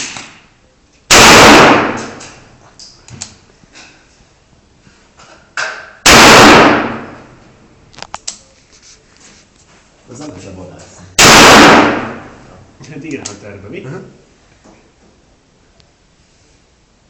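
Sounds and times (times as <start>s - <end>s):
loud gunshots with echo: 1.1s - 2.4s, 6.0s - 7.3s, 11.2s - 12.4s.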